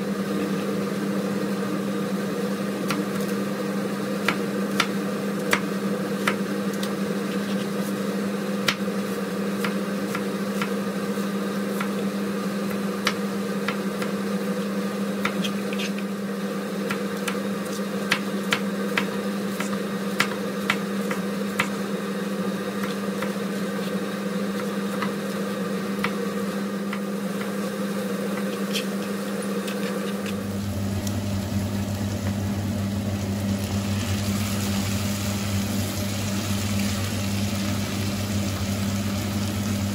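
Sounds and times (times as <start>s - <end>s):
machine hum: 21.2s - 39.9s.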